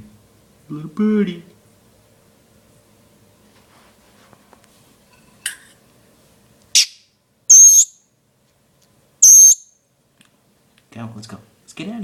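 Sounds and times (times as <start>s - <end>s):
baby bird calling: 6.8s - 8.0s, 9.2s - 9.7s.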